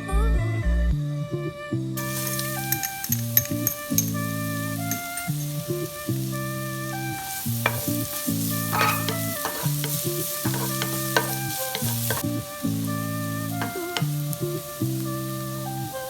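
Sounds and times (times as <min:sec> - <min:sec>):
background music: 0:00.0 - 0:16.0
food sizzling in a wok: 0:02.0 - 0:16.0
spatula scraping a pan: 0:07.0 - 0:15.0.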